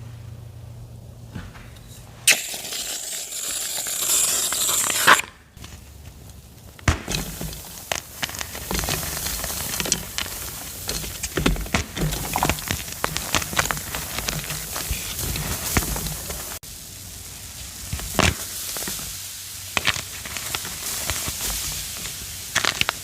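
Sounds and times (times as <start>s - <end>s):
dense crackling hiss: 0.0s - 23.0s
chalk being crushed: 1.9s - 16.6s, 17.9s - 23.0s.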